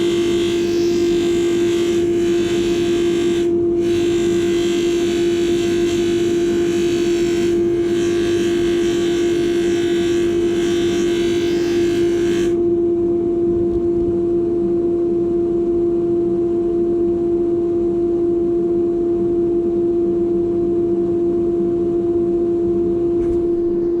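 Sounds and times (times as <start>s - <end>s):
knife handle hissing on polishing wheel: 0.0s - 12.6s
polishing machine motor humming: 0.0s - 12.6s.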